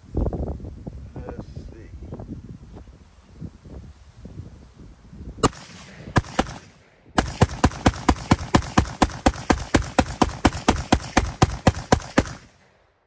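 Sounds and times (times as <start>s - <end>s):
pistol gunshots: 5.4s - 12.8s.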